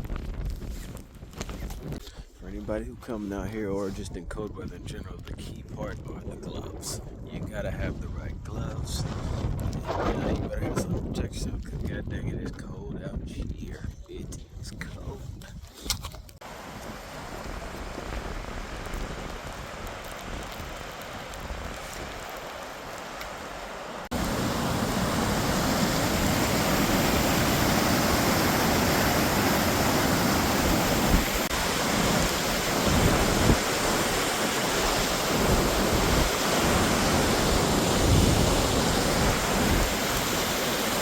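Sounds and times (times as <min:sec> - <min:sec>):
wind buffeting microphone: 0:00.0 - 0:23.0, 0:24.1 - 0:41.0
waterfall roar: 0:16.4 - 0:41.0.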